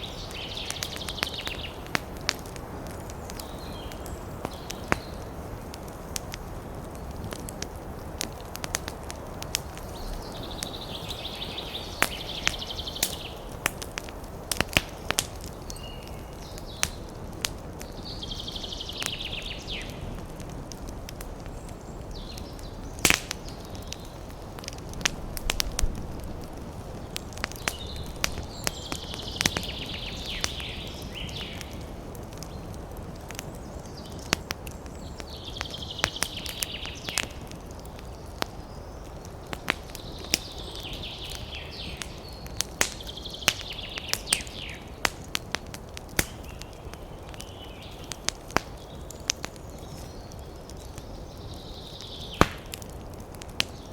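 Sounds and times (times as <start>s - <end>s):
campfire crackling: 0.0s - 53.9s
bird chirping: 9.8s - 13.5s, 26.9s - 31.8s.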